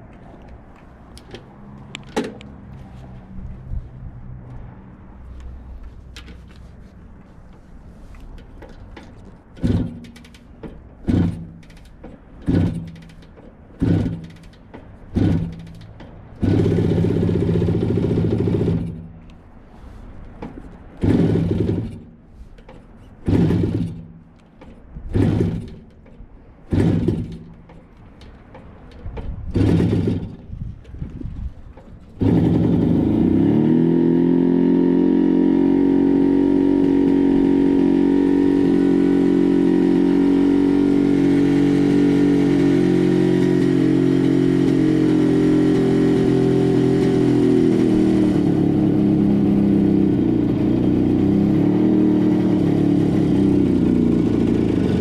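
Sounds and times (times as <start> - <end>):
two-stroke motorcycle engine revving: 9.0 - 19.1, 21.0 - 22.2, 23.2 - 24.2, 25.0 - 25.9, 26.6 - 27.8, 29.5 - 30.5, 32.2 - 55.0.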